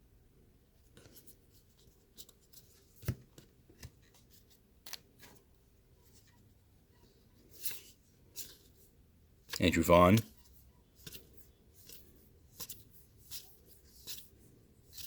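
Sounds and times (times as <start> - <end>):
trading cards ticking and brushing: 9.4 - 15.0.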